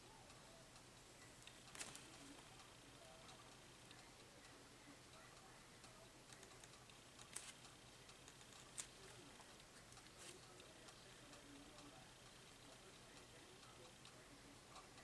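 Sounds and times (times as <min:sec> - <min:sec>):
faint ticks: 0:00.3 - 0:15.0
small sharp clicks: 0:01.4 - 0:02.8, 0:06.3 - 0:10.7.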